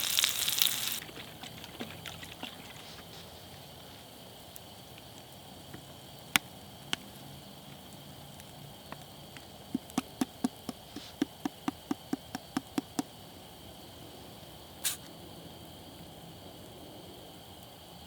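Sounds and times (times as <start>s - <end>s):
grass insects chirring: 0.0s - 6.4s.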